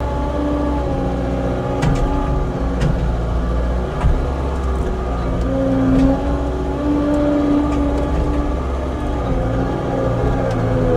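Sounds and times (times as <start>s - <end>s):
skid steer engine running: 0.0s - 10.9s
machine knocks: 1.8s - 3.2s.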